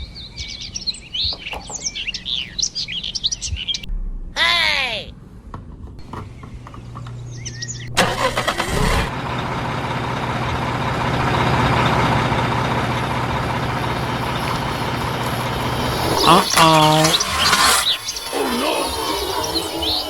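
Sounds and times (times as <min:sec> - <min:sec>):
vehicle engine starting and running: 0:05.2 - 0:20.0.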